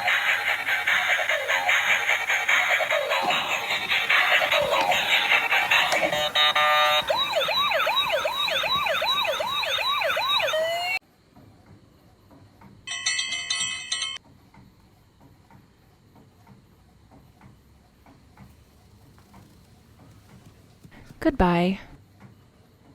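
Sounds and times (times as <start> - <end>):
electronic toy siren wail: 0.0 - 11.0.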